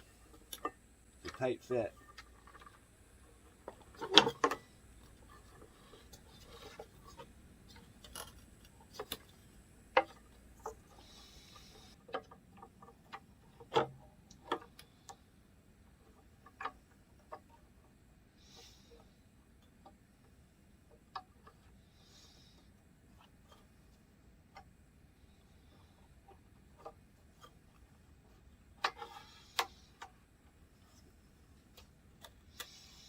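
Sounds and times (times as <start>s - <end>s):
metal parts and tools clicking: 3.7s - 15.0s.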